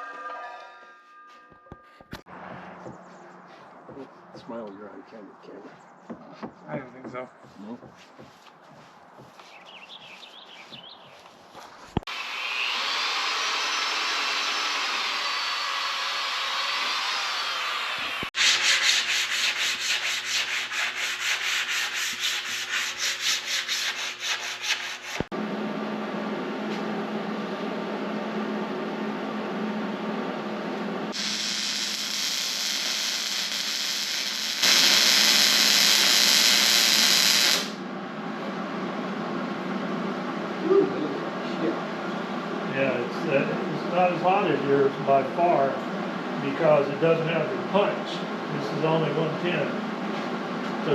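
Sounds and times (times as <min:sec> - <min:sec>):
welder low hum: 0:11.8 - 0:18.3, 0:19.2 - 0:41.2
metal grinding with whine: 0:12.0 - 0:18.3, 0:31.1 - 0:40.2
pulsing rasp: 0:12.2 - 0:25.3
welder frying hiss: 0:31.1 - 0:37.8.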